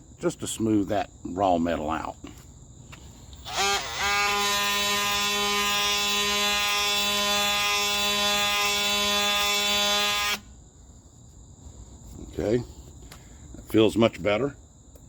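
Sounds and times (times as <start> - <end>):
angle grinder whine on metal: 3.4 - 10.5.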